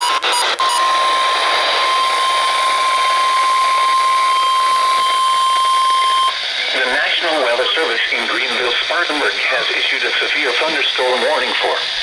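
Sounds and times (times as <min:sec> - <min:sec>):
steady alarm tone: 0:00.0 - 0:07.6
radio receiver hiss: 0:00.0 - 0:12.0.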